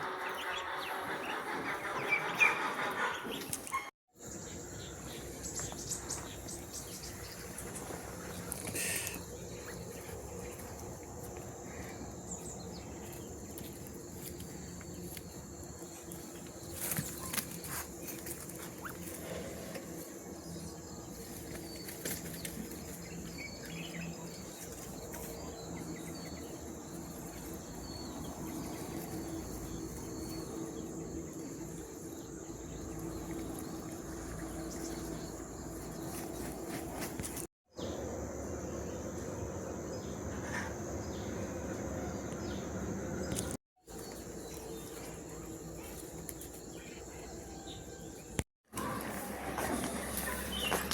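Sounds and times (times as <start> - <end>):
rural outdoor background noise: 0.0 - 50.9.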